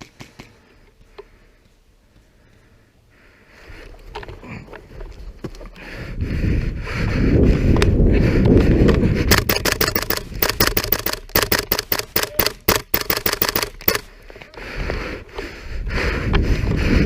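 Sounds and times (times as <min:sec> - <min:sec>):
airsoft gun firing bursts: 0:09.3 - 0:14.1.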